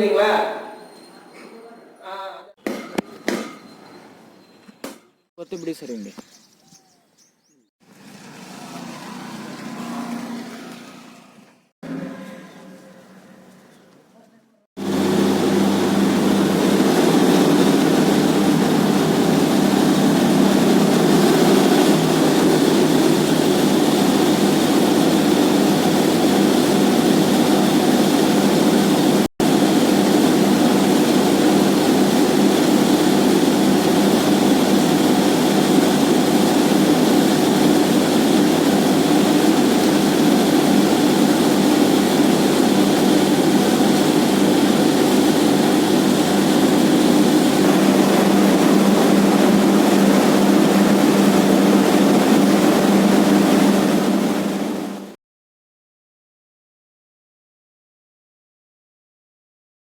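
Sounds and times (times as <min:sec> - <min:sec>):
drilling rig running: 0:14.8 - 0:55.1
air compressor running: 0:14.8 - 0:55.2.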